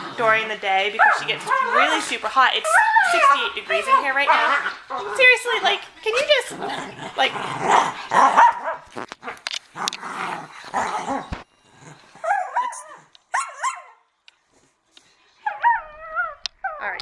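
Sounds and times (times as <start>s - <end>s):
dogs growling and scuffling: 0.0s - 13.1s
dog yelping: 1.0s - 5.4s, 8.1s - 9.4s, 12.2s - 14.0s.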